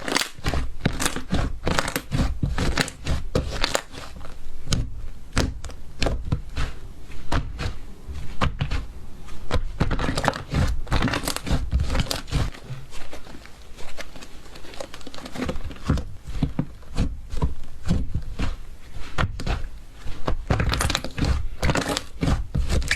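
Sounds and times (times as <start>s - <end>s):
slime crackling and popping: 0.0s - 4.8s, 20.4s - 22.9s.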